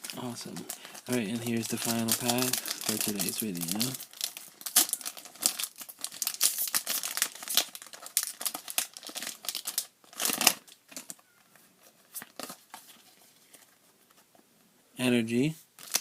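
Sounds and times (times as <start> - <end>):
foil pack crinkling and tearing: 0.0 - 11.2, 15.8 - 16.0.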